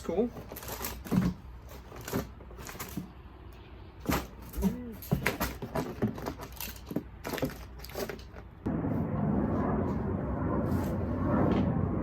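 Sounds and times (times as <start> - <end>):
rising and falling pitched sound: 8.7 - 12.0.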